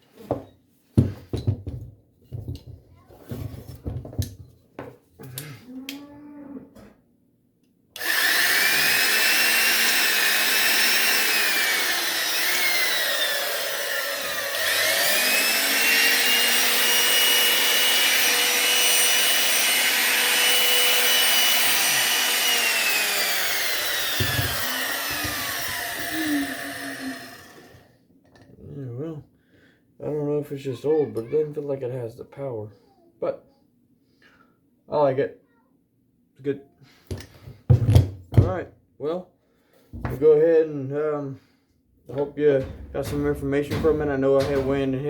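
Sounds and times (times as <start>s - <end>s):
power tool motor whining: 8.0s - 27.8s
handling knocks: 42.5s - 45.0s.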